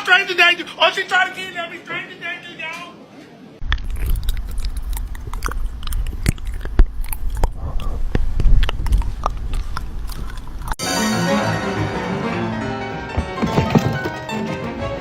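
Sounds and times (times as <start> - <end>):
animal chewing crunches: 3.6 - 10.8.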